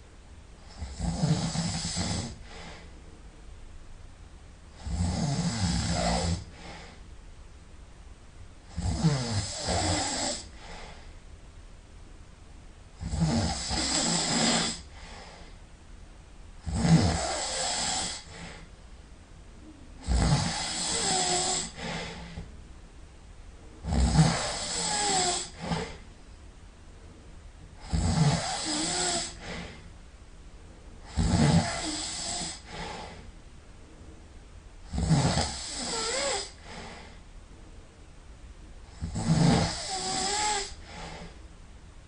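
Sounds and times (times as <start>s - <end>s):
person snoring loudly: 0.7s - 2.7s, 4.8s - 6.9s, 8.7s - 10.9s, 13.0s - 15.2s, 16.6s - 18.6s, 20.0s - 22.4s, 23.8s - 26.0s, 27.8s - 29.8s, 31.0s - 33.2s, 34.9s - 37.0s, 38.9s - 41.4s.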